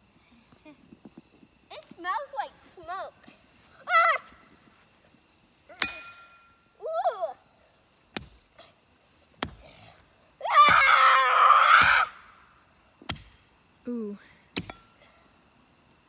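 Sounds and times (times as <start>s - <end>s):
child screaming: 3.8s - 4.4s, 6.8s - 7.4s, 10.4s - 12.2s
garden hoe striking plastic: 8.1s - 8.4s, 9.4s - 9.7s, 13.1s - 13.4s.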